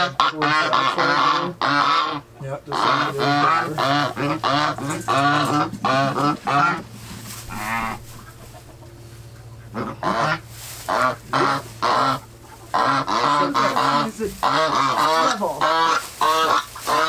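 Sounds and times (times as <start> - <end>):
geese honking: 0.0 - 17.0.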